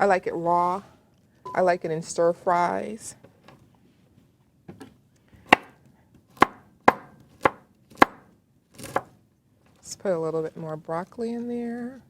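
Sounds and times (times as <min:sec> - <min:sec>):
knife chopping broccoli: 0:05.5 - 0:09.1.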